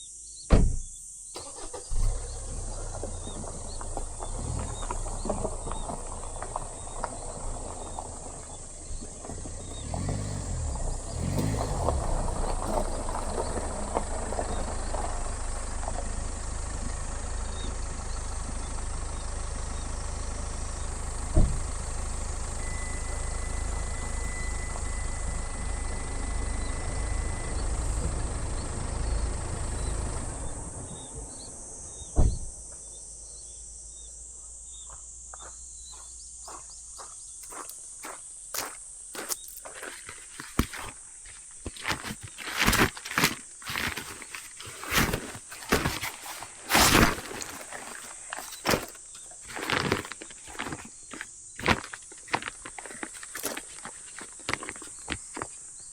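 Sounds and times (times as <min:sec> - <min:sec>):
low engine rumble: 0:01.4 - 0:37.0.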